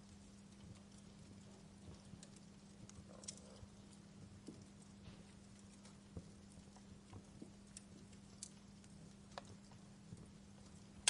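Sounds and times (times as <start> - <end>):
low steady hum: 0.0 - 11.0
wood fire crackling: 0.0 - 11.0.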